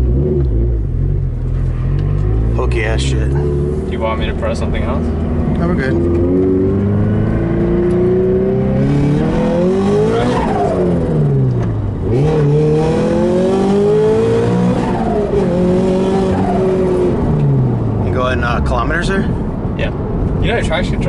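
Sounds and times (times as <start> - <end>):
car engine accelerating: 0.0 - 21.0.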